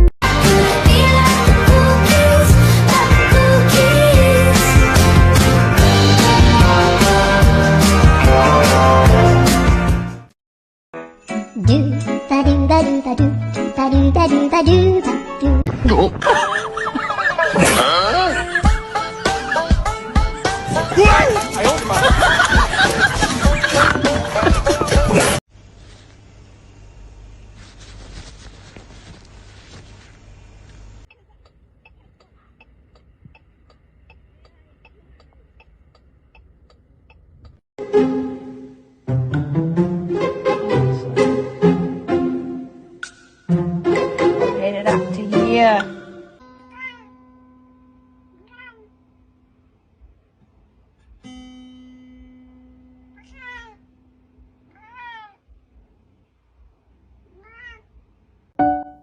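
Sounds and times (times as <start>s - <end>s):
cat meowing: 46.7s - 47.1s, 48.4s - 49.0s, 53.2s - 53.8s, 54.7s - 55.5s, 57.2s - 57.9s.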